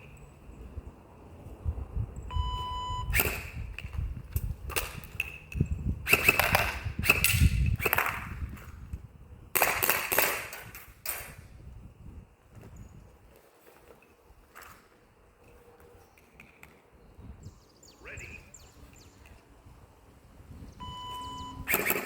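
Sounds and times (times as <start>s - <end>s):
short electronic beep: 2.3s - 3.2s, 20.8s - 21.7s
airsoft gun shots: 3.1s - 3.6s, 6.1s - 8.4s, 9.6s - 11.4s, 21.7s - 22.0s.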